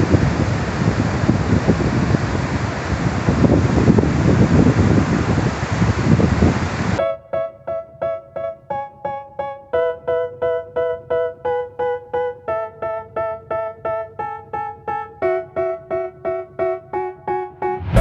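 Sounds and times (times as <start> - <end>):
keyboard playing repeated chords: 7.0 - 18.0.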